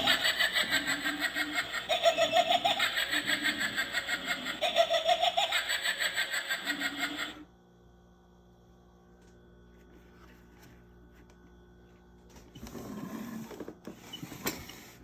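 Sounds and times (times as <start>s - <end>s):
recorded pulsing laugh from toy speaker: 0.0s - 7.5s.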